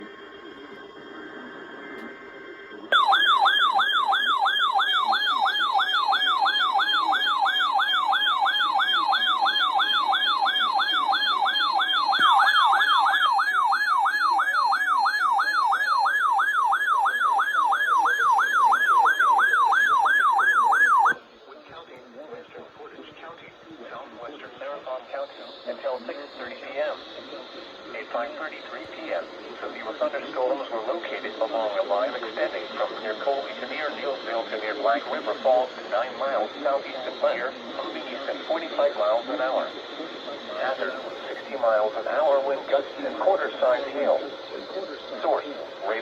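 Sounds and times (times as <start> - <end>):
warbling siren-like alert tone: 2.9 - 21.2.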